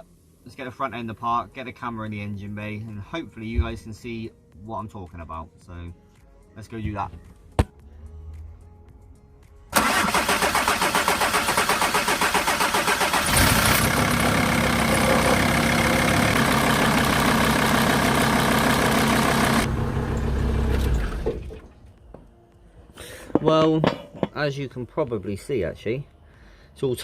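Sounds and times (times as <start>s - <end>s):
diesel engine cranking on starter: 9.7s - 21.8s
diesel engine running: 9.8s - 21.8s.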